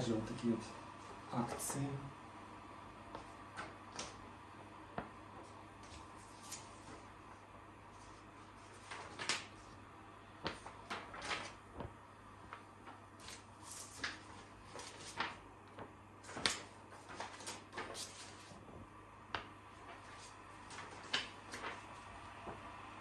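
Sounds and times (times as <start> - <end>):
faint steady hum: 0.0 - 23.0
packaging rustling: 10.5 - 18.6.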